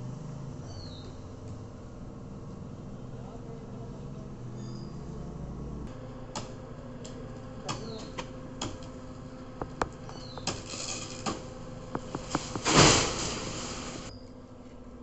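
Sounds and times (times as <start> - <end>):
low hum: 4.1 - 14.4
sharp knocks and clicks: 9.6 - 12.7.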